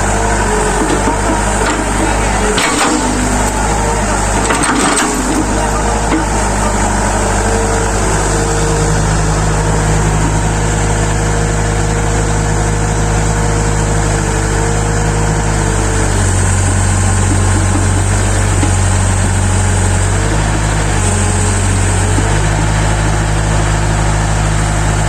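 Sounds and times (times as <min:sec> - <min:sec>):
excavator engine running: 0:00.0 - 0:25.0.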